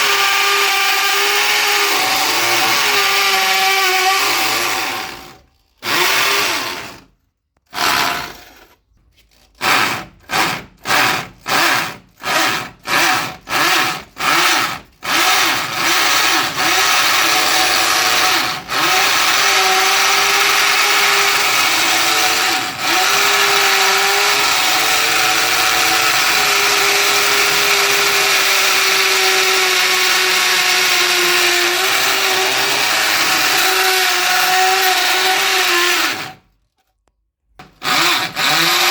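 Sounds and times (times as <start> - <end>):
electric drill boring into concrete: 0.0 - 7.1, 7.7 - 8.8, 9.6 - 36.4, 37.6 - 38.9.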